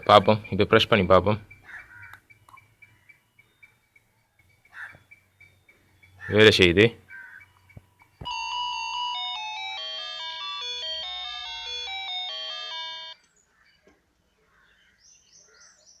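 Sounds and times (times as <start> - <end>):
doorbell electronic chime tune: 8.3 - 13.2.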